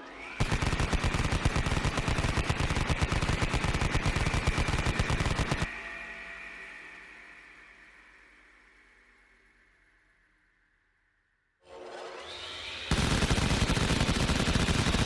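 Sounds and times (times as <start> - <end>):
steady whine: 0.0 - 10.6
rotary machine gun firing: 0.3 - 5.7, 12.9 - 15.0.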